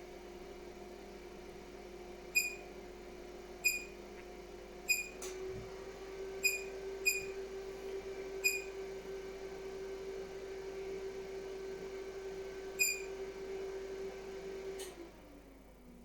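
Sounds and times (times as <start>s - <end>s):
click: 14.8s - 15.0s.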